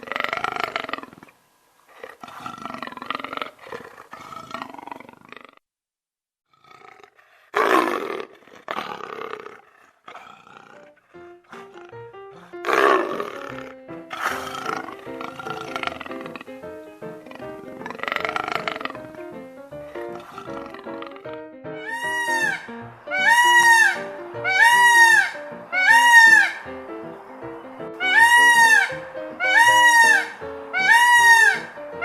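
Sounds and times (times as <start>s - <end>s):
large animal calling loudly: 7.6s - 19.2s, 19.9s - 26.8s, 28.0s - 32.0s
light plucked music: 11.8s - 32.0s.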